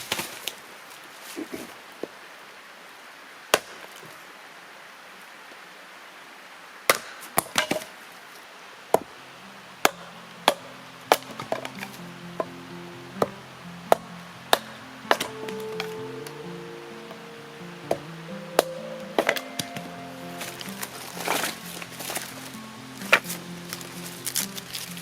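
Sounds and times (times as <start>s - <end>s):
soft music: 9.2s - 25.0s.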